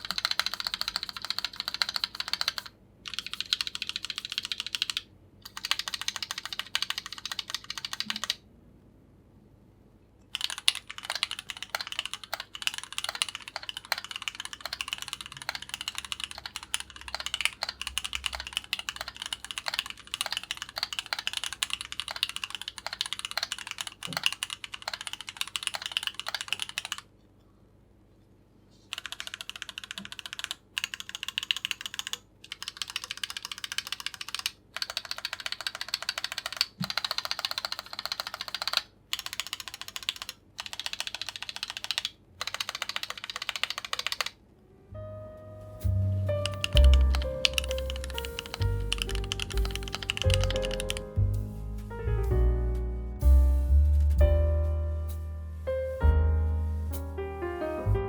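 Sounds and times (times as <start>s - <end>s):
mechanical keyboard typing: 0.0s - 8.4s, 10.3s - 27.1s, 28.9s - 44.4s, 46.3s - 51.3s.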